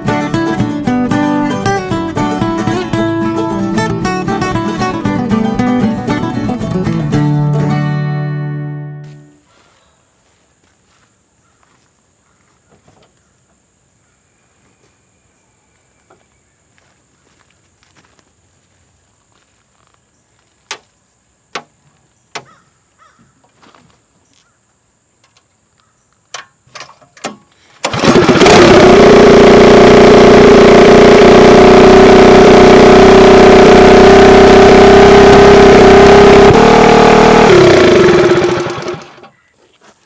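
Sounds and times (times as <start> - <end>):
gas engine running at high idle: 27.9 - 39.2.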